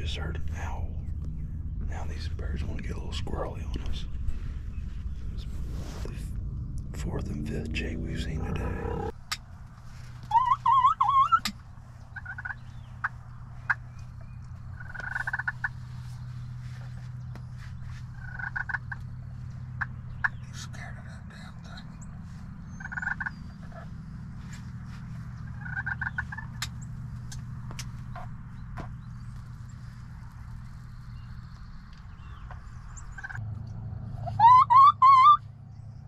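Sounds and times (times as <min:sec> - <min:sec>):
steady low hum: 0:00.0 - 0:10.6, 0:11.4 - 0:34.4
wavering rising bird call: 0:10.2 - 0:11.5, 0:34.1 - 0:35.5
distant turkeys gobbling: 0:10.2 - 0:16.1, 0:18.0 - 0:20.5, 0:21.1 - 0:29.0, 0:32.3 - 0:33.4, 0:34.1 - 0:35.4.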